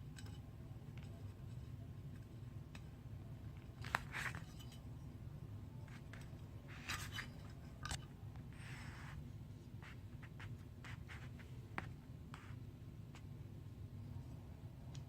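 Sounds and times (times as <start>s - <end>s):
low steady hum: 0.0s - 15.0s
metal scrape: 3.8s - 4.8s, 5.9s - 8.0s.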